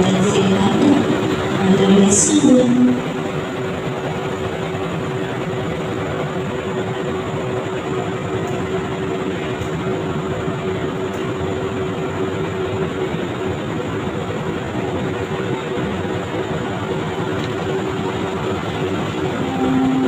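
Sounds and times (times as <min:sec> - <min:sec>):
passenger train running: 0:00.0 - 0:20.0
steady hum: 0:13.5 - 0:20.0.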